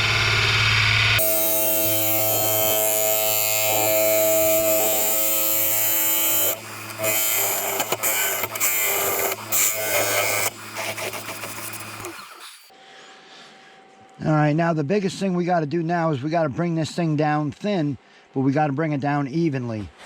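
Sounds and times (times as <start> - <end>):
lathe motor hum: 0.0 - 12.7
turning tool cutting wood: 1.2 - 12.7.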